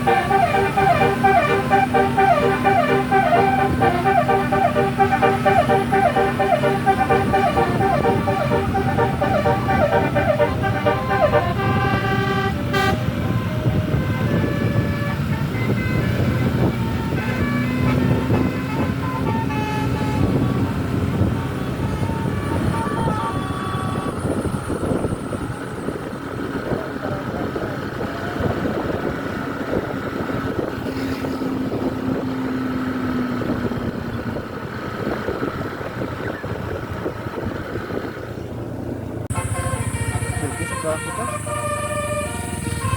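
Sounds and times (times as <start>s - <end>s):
low horn tone: 0.0s - 23.1s, 39.3s - 42.9s
musical bus horns: 0.0s - 32.2s, 39.3s - 42.9s
bus engines and road noise: 0.0s - 42.9s.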